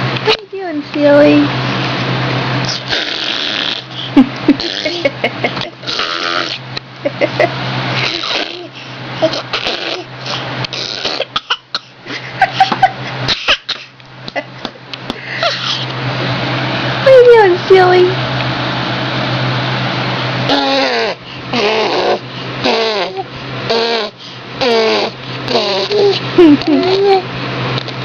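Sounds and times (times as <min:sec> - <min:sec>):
baby blowing raspberries: 0:02.6 - 0:05.0, 0:05.8 - 0:06.6, 0:08.0 - 0:11.9, 0:20.5 - 0:27.2.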